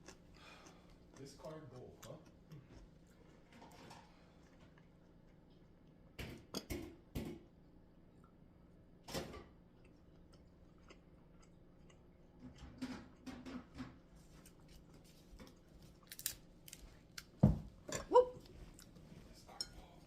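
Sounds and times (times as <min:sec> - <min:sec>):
seafood being handled and eaten: 0:00.0 - 0:06.1, 0:14.1 - 0:17.4.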